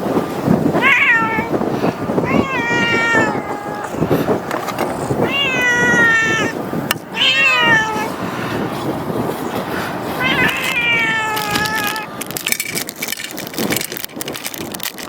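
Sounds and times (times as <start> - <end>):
kittens meowing: 0.8 - 1.5, 2.2 - 4.0, 5.0 - 8.1, 10.2 - 12.1.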